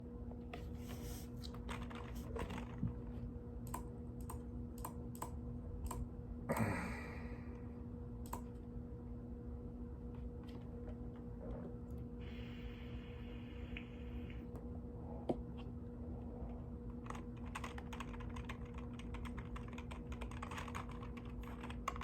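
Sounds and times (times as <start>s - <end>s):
low electrical hum: 0.0s - 22.0s
mechanical keyboard typing: 17.0s - 22.0s.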